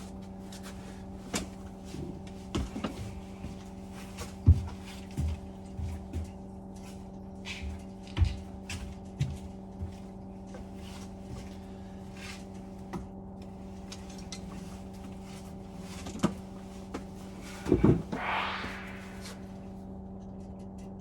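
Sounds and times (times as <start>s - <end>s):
steady low hum: 17.4s - 19.6s
short metal scrape: 17.6s - 19.6s.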